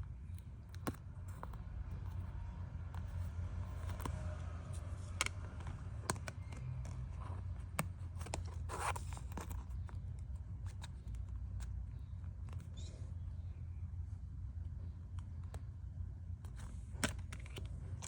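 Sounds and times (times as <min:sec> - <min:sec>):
steady low hum: 0:00.0 - 0:18.0
cards clicking and tapping: 0:00.3 - 0:12.8, 0:16.4 - 0:18.0.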